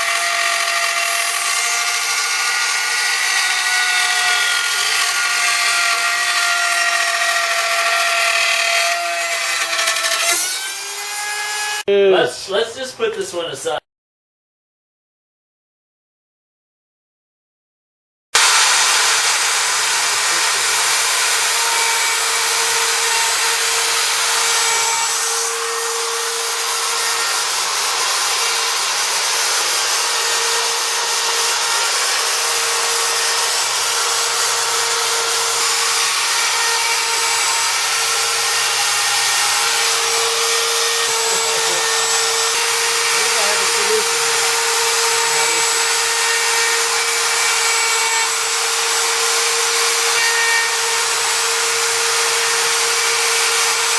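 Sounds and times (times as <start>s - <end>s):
milling machine spindle whine: 37.4s - 45.9s.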